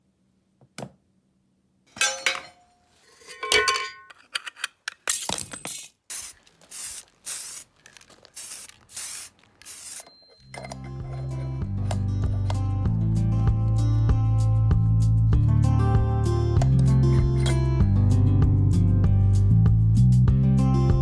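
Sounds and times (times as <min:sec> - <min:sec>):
small metal parts clinking: 0:03.2 - 0:12.6
short hissing sprays: 0:06.1 - 0:10.1.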